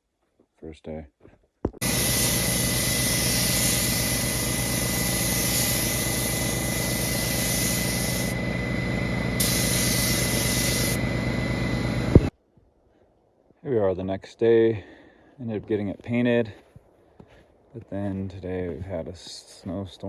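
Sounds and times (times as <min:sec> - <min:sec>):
spray hissing: 0:01.8 - 0:12.3
sprayer motor hum: 0:01.8 - 0:12.3.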